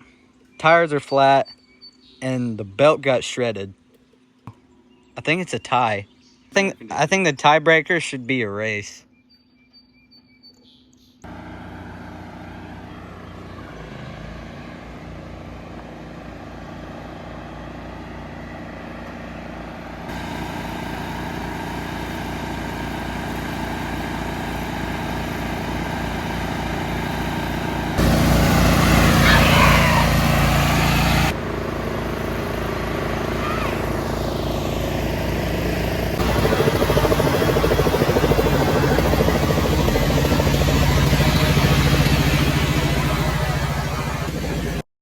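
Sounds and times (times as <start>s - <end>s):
riding lawnmower engines running: 11.2s - 44.8s.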